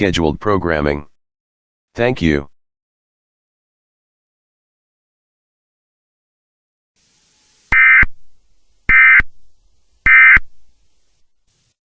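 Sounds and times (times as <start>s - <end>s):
buzzy digital data bursts: 7.0s - 11.8s.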